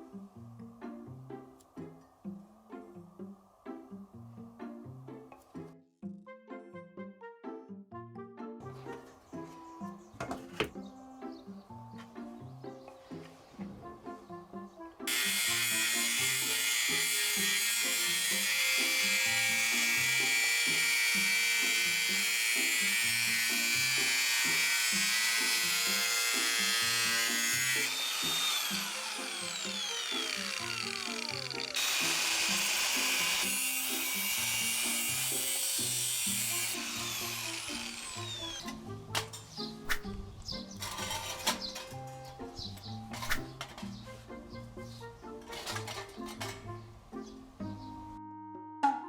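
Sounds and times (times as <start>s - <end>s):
background music: 0.0s - 49.0s
angle grinder whining on metal: 15.1s - 39.7s, 40.8s - 42.8s.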